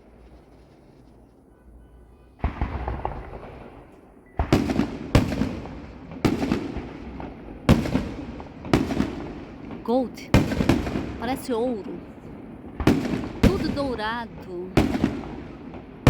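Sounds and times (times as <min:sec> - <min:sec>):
fireworks loud bangs: 0:02.3 - 0:16.0
fireworks crackling burst: 0:04.4 - 0:16.0.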